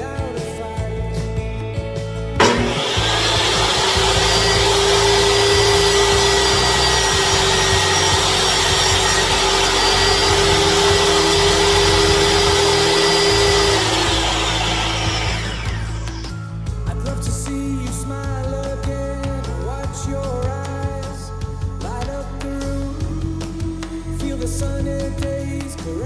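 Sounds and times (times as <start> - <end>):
table saw whining: 2.4 - 16.5.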